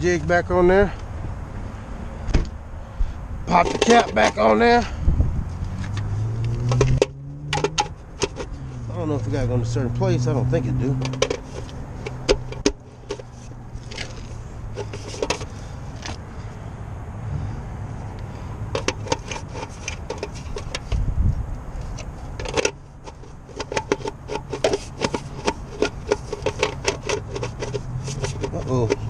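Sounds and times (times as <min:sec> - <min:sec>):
metal tools clinking and scraping: 0:03.5 - 0:04.8, 0:11.0 - 0:15.6, 0:21.8 - 0:29.0.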